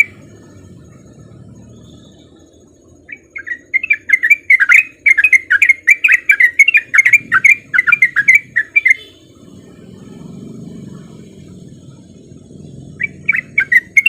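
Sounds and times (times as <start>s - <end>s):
bird singing whistled notes: 1.5s - 9.2s, 12.6s - 14.0s.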